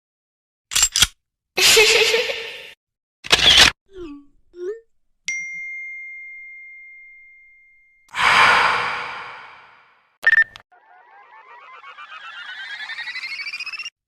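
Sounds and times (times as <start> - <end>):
bell-like ding: 5.3 - 8.1
long breathy sigh: 8.1 - 9.9.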